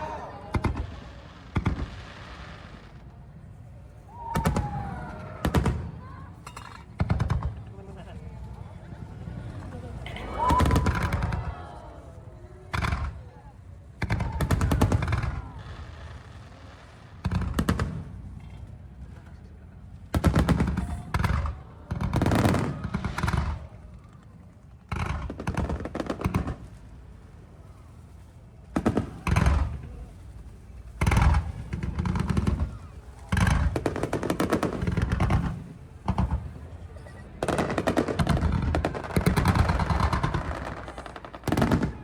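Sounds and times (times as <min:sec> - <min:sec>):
fireworks crackling bangs: 0:00.0 - 0:42.0.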